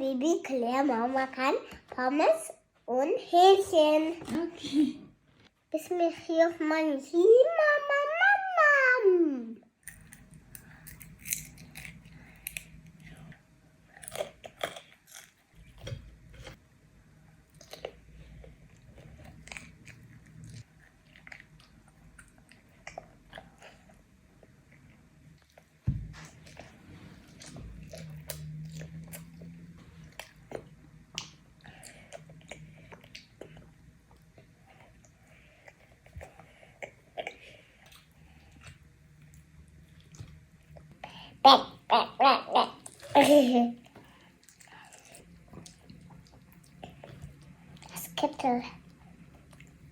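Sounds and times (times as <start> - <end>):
chewing crunches: 9.8 - 13.0, 13.9 - 16.6
chewing food: 17.5 - 41.0, 43.8 - 49.9.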